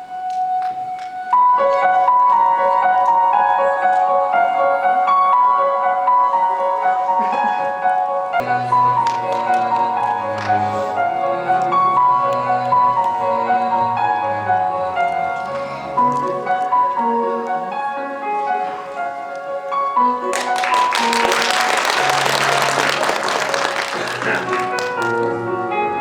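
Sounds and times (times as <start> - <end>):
recorded melodic music: 0.0 - 26.0
audience applause: 8.4 - 11.0, 20.2 - 25.5.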